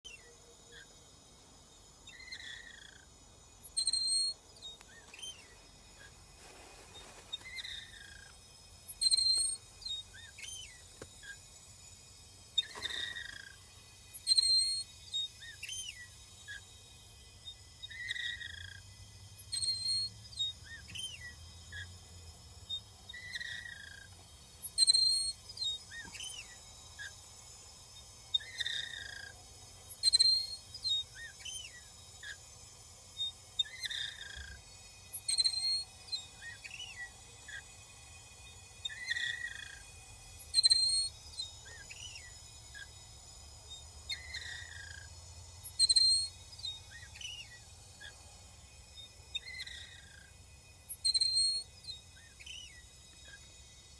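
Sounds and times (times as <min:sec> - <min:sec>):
gas meter chirping: 0:01.9 - 0:21.9, 0:22.6 - 0:43.0, 0:43.8 - 0:53.9.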